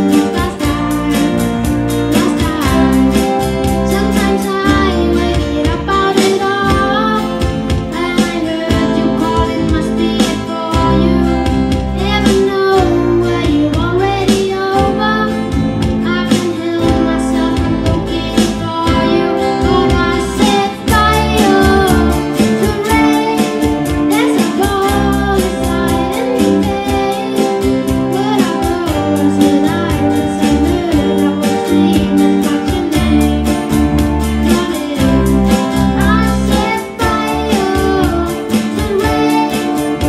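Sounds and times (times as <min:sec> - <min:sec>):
bass: 0:00.0 - 0:40.0
guitar: 0:00.0 - 0:40.0
steady beat: 0:00.0 - 0:40.0
children singing: 0:16.3 - 0:40.0.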